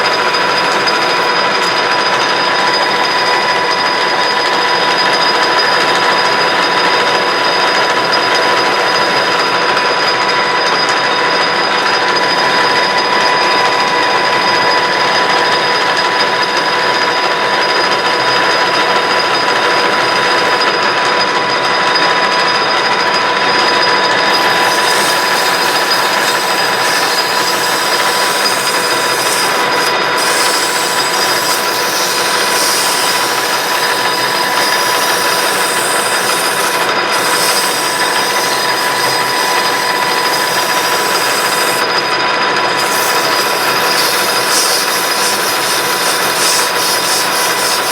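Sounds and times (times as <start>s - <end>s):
scratchy rubbing on spinning shaft: 0.0s - 20.7s, 23.4s - 47.9s
metal lathe whine: 0.0s - 47.9s.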